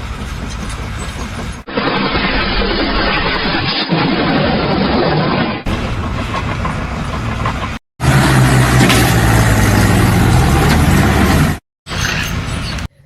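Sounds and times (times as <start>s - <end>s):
loud machinery noise: 0.0s - 12.9s
engine hum with harsh noise: 0.0s - 13.0s.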